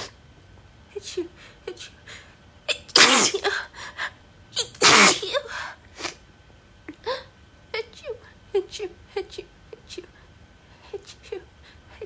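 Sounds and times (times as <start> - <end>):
woman sneezing: 2.7 - 3.6, 4.6 - 6.2.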